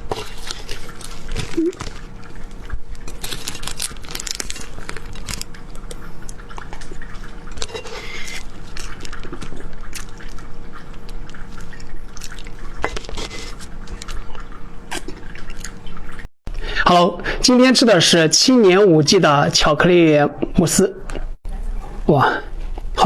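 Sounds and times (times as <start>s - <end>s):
wet mouth sounds eating cake: 0.0s - 16.1s
faint steady hum: 0.0s - 23.0s.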